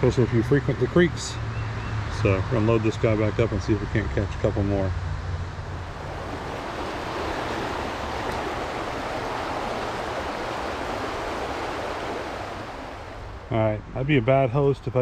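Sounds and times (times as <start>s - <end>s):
fast-running creek rushing: 5.7s - 13.6s.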